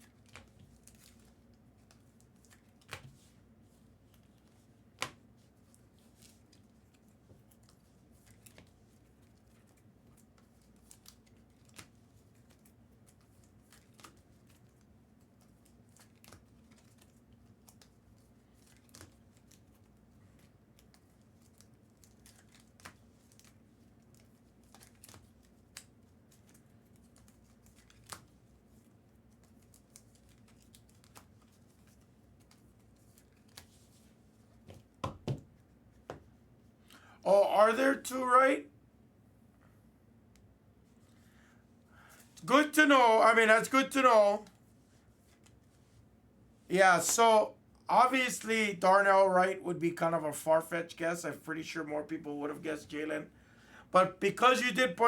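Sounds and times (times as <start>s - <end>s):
trading cards clicking and rustling: 29.3s - 33.7s.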